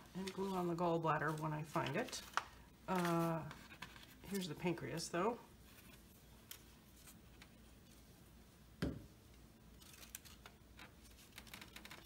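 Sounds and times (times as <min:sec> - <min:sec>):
paper rustling: 0:00.2 - 0:04.8
dull thump on table: 0:08.8 - 0:09.0
paper clicks: 0:09.8 - 0:12.0.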